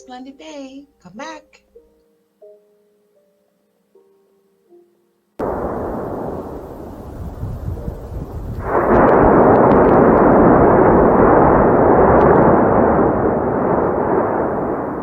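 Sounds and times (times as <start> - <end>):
loud rumbling roar: 5.4 - 15.0.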